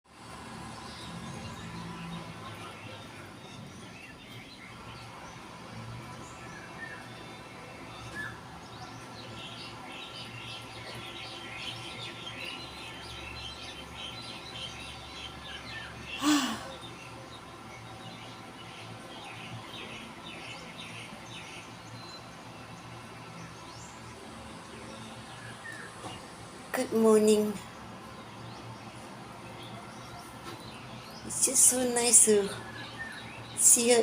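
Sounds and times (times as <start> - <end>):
small birds chirping: 0.1 - 34.0.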